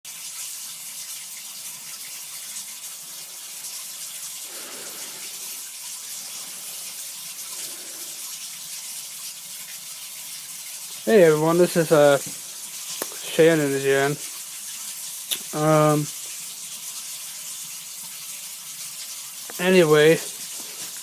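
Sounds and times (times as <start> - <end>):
steady high hiss: 2.9 - 8.4, 11.0 - 14.5, 15.2 - 16.5, 19.4 - 21.0.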